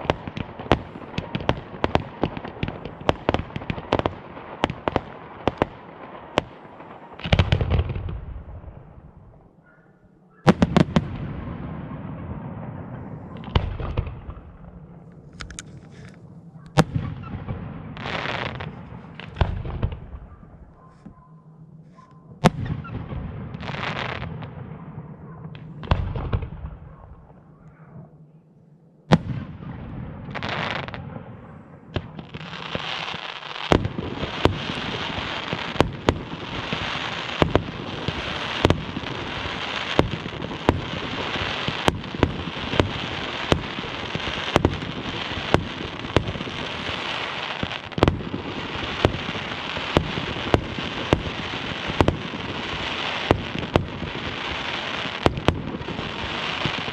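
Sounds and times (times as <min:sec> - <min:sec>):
fireworks crackling: 0:00.0 - 0:09.5, 0:10.5 - 0:21.1, 0:21.8 - 0:24.6, 0:29.1 - 0:56.9
fireworks bangs: 0:00.0 - 0:09.6, 0:10.4 - 0:27.6, 0:29.0 - 0:56.9
fireworks hissing: 0:32.6 - 0:56.9.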